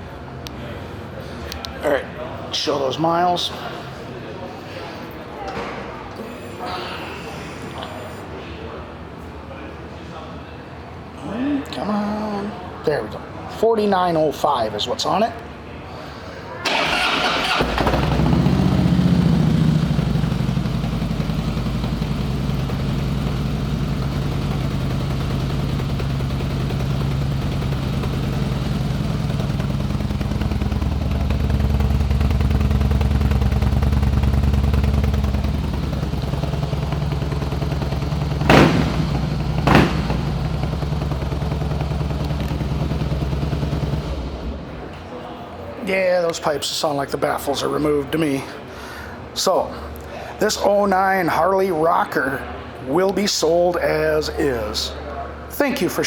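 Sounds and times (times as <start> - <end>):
exhaust pops: 16.7 - 44.6
loud motorcycle engine idling: 16.7 - 44.9.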